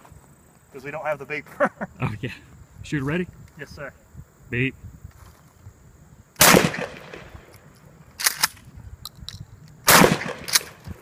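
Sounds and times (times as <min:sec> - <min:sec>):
shotgun blasts: 0:06.4 - 0:07.5, 0:09.8 - 0:11.0.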